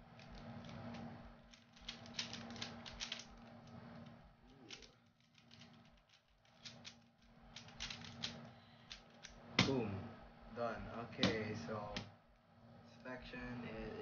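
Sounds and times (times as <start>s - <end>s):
puzzle cube plastic clicks: 0.1s - 3.4s.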